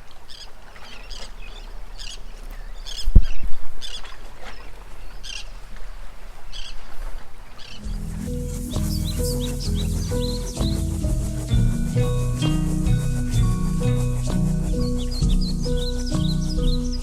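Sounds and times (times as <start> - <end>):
birds chirping: 7.6 - 17.0.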